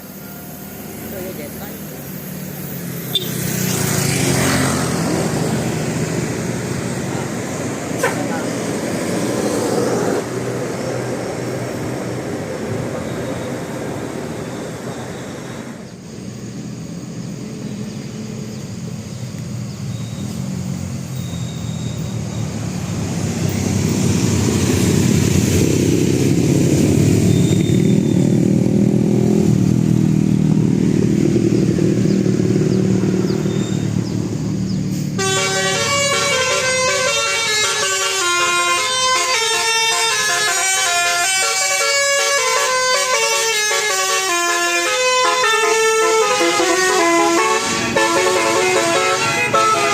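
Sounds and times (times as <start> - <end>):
vehicle engine: 0.0 - 49.9
multi-tone air horn tune: 3.0 - 3.7, 35.1 - 49.9.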